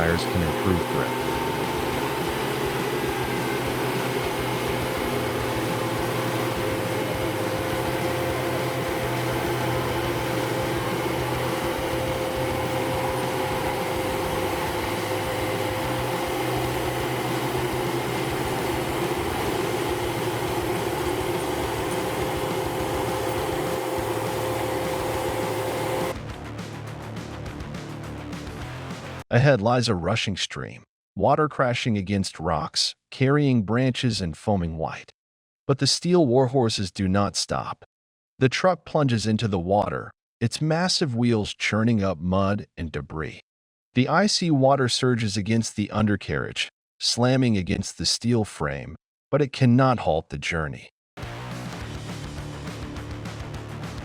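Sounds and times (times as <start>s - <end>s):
steady whining tone: 0.0s - 26.1s
truck engine droning: 0.0s - 26.1s.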